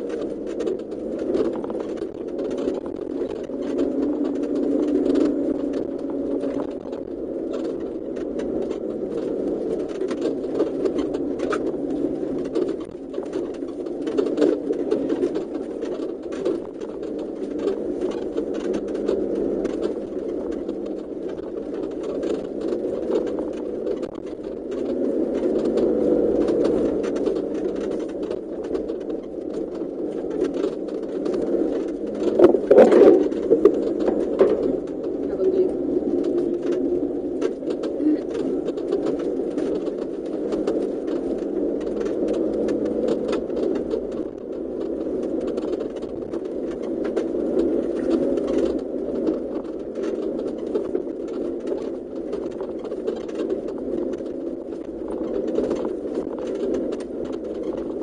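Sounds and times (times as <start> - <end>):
off-road vehicle engine drone: 0.0 - 29.1.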